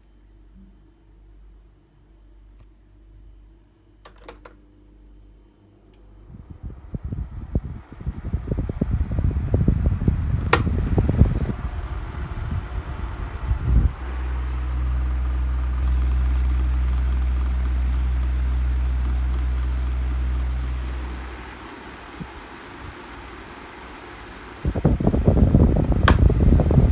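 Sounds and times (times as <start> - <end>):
fan click: 4.0 - 4.6, 10.1 - 11.4, 15.8 - 26.9
fan motor hum: 4.0 - 26.9
fan knocking and rumble: 6.3 - 14.4, 15.8 - 26.9.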